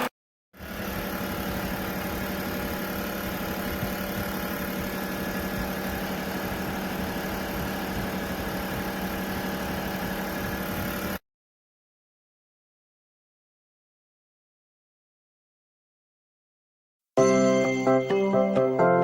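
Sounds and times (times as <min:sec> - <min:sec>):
heater fan humming: 0:00.6 - 0:11.2.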